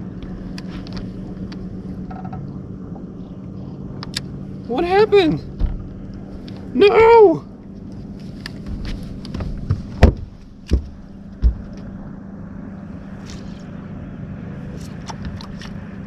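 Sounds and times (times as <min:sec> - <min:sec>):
boat motor humming: 0:00.0 - 0:16.0
dull thumps: 0:08.7 - 0:11.9.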